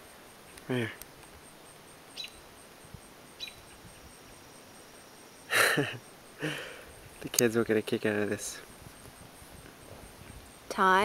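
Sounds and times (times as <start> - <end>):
insect pulsing: 0.0 - 11.0
person exhaling close to microphone: 6.4 - 6.9.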